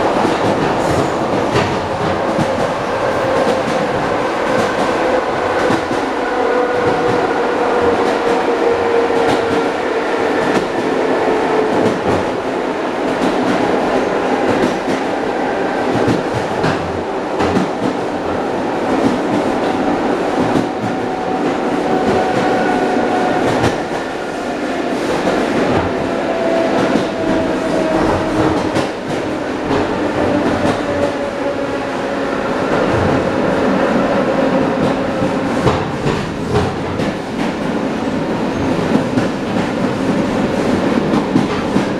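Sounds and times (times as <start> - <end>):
train wheels clattering over rail joints: 0.0 - 6.1, 32.7 - 37.8, 38.5 - 41.9.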